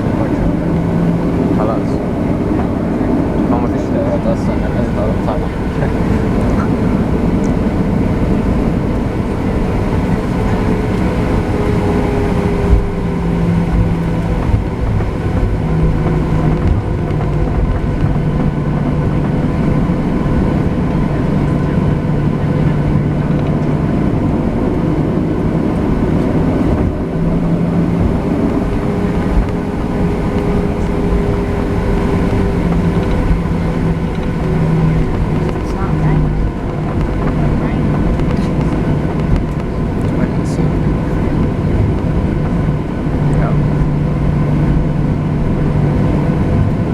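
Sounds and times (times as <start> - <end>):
jet engines rumbling in cabin: 0.0 - 46.9.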